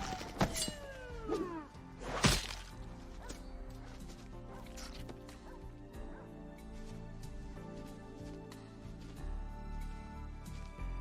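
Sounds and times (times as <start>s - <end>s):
quiet background music: 0.0s - 11.0s.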